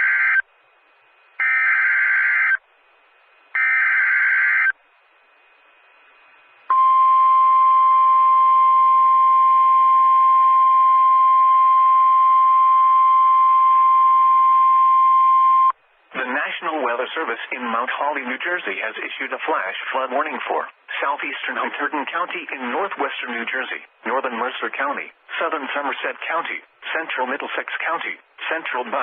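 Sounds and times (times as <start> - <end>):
steady alarm tone: 1.4 - 2.6, 3.6 - 4.8.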